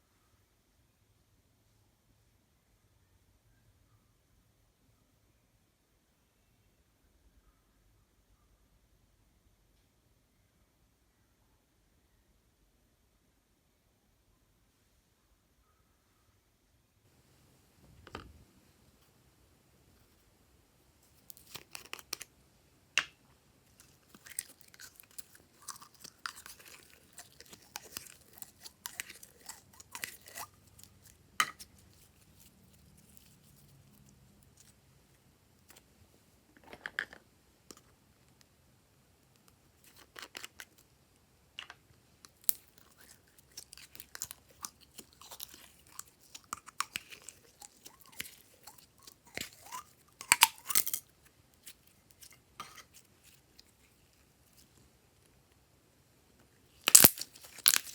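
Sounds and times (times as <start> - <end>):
slime squished by hand: 56.8 - 57.9.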